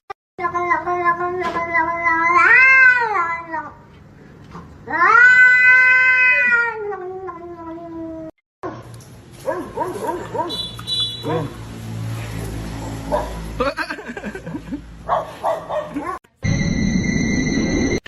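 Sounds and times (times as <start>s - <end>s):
cat meowing: 1.4s - 3.7s, 4.9s - 8.3s.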